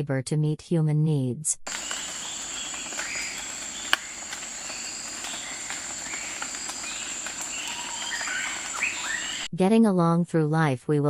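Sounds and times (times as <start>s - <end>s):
bird chirps: 1.7s - 9.5s
high insect trill: 1.7s - 9.5s.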